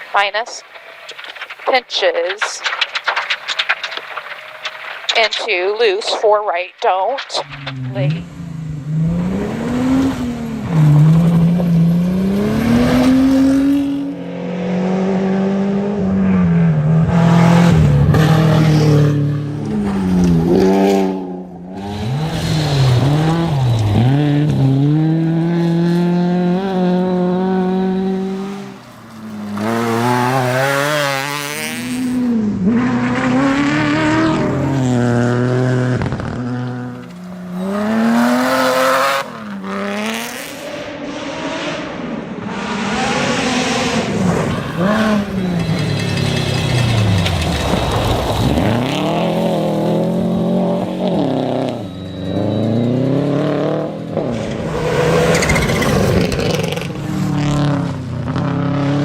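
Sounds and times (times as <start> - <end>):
rally car engines revving: 7.4 - 59.0.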